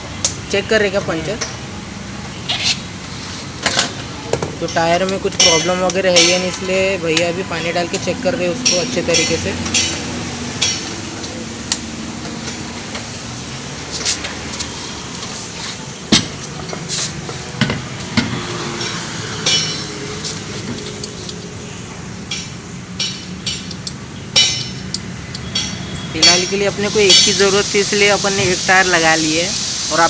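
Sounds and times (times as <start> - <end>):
metallic clinks: 22.3 - 27.4.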